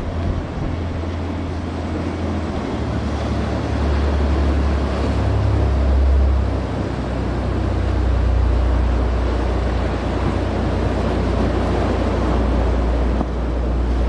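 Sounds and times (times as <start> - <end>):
wind on microphone: 0.0 - 3.1, 7.0 - 14.0
boat engines rumbling: 0.0 - 14.0
waves washing: 0.0 - 14.0.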